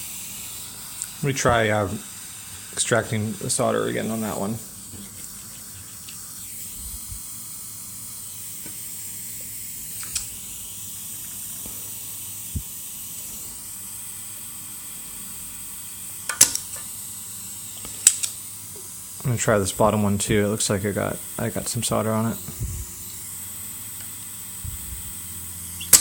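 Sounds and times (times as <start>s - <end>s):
sharp click: 10.0s - 10.3s, 16.3s - 16.9s, 17.8s - 18.4s.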